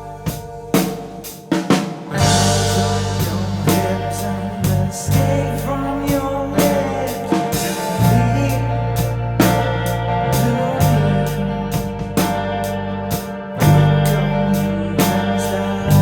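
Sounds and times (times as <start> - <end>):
drum kit beat: 0.0 - 14.3
bass notes: 0.0 - 16.0
guitar chords: 0.0 - 16.0.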